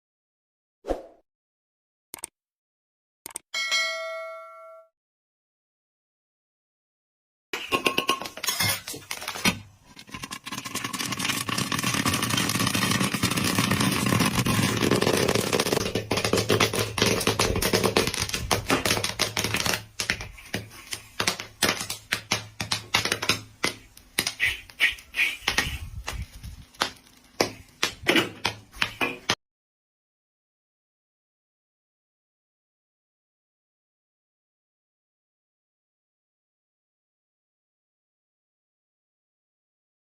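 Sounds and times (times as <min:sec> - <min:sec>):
popcorn popping: 0:07.6 - 0:29.4.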